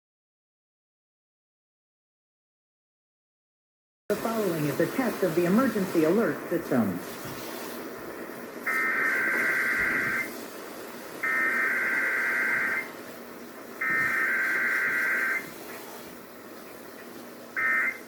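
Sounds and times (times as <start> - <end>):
radio hiss: 4.1 - 18.0
warbling data tones: 8.6 - 10.4, 11.2 - 12.9, 13.8 - 15.5.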